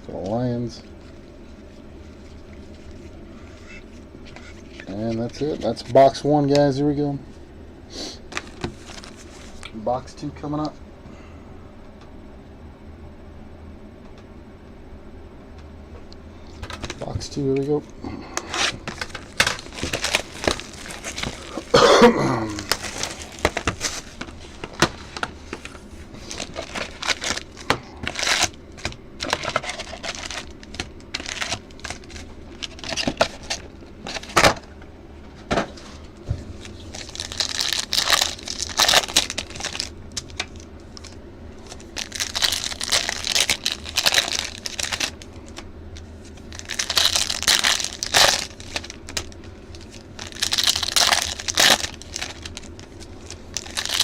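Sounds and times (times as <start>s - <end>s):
foil wrappers tearing and crinkling: 8.3s - 9.7s, 18.0s - 34.6s, 36.5s - 54.0s.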